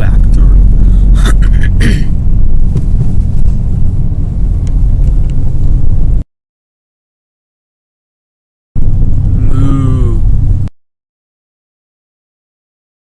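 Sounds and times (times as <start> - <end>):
car engine and exhaust rumble: 0.0 - 6.2, 8.8 - 10.7.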